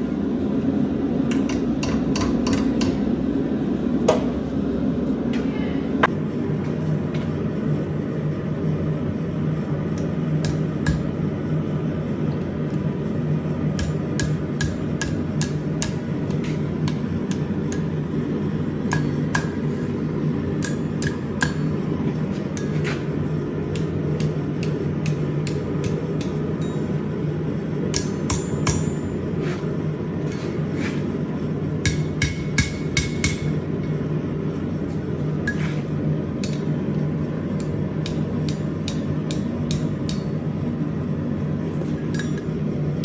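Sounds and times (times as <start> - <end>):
hammer striking steel on anvil: 10.0 - 11.2, 13.8 - 18.0, 18.8 - 23.1, 23.7 - 27.2, 27.9 - 29.4, 31.8 - 34.0, 35.5 - 36.8, 37.5 - 40.4
anvil ringing: 24.2 - 27.1, 28.0 - 29.3.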